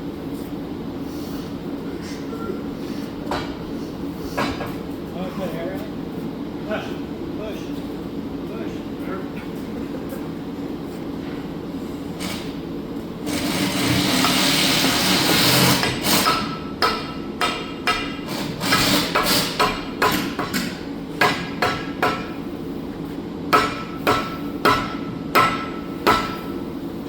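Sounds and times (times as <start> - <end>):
hammer striking metal cylinder: 15.8 - 22.4, 23.5 - 26.7.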